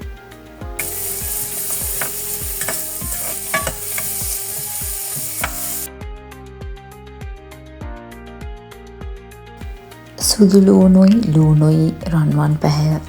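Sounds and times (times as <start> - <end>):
food sizzling in hot oil: 0.0 - 5.9
spoon clicking against pan: 0.8 - 5.9.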